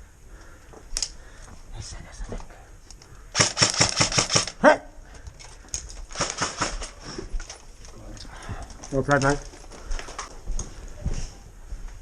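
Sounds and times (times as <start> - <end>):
airsoft gun firing bursts: 3.3 - 4.6, 6.1 - 6.9.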